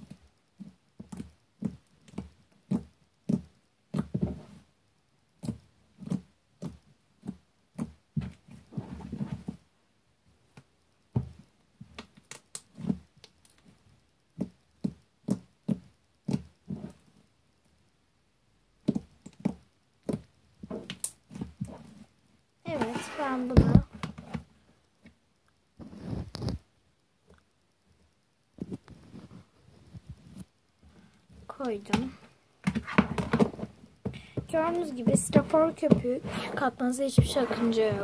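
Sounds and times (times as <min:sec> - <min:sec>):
slime squelching: 0:22.7 - 0:24.4, 0:31.0 - 0:38.0.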